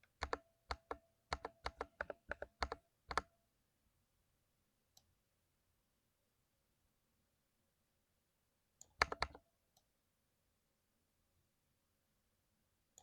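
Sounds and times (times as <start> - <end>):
mechanical keyboard typing: 0.0 - 3.3, 8.9 - 9.4.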